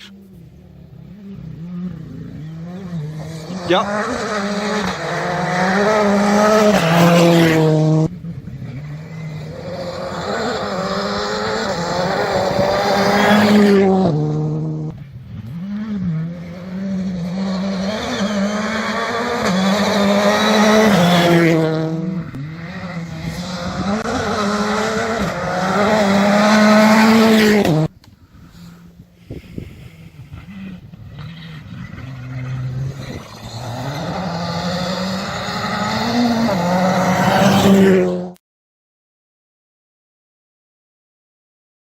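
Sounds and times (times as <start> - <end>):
rally car engines revving: 0.0 - 38.4.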